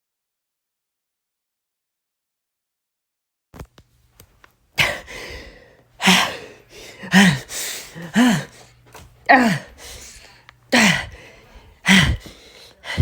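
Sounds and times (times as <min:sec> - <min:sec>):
person gasping and panting: 0:04.8 - 0:13.0.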